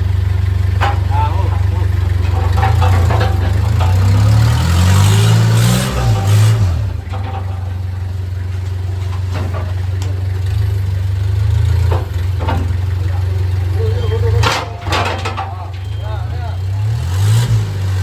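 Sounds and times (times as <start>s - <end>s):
vehicle engine idling and revving: 0.0s - 18.0s.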